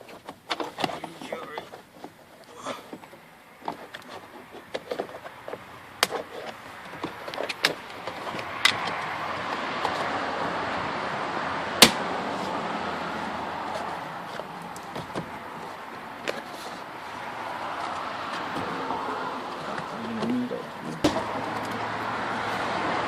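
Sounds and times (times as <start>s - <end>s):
plastic panel rubbing: 3.0s - 10.1s.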